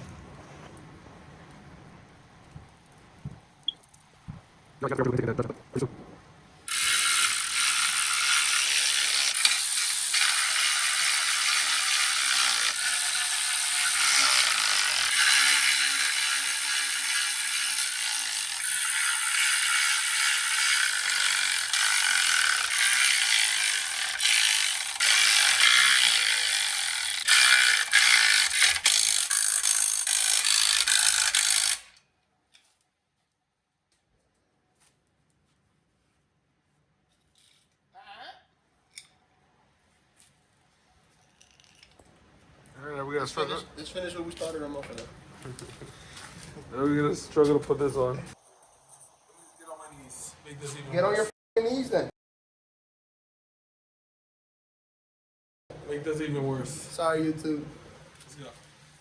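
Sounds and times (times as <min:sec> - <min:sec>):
ratchet wrench clicking: 0:06.7 - 0:18.2.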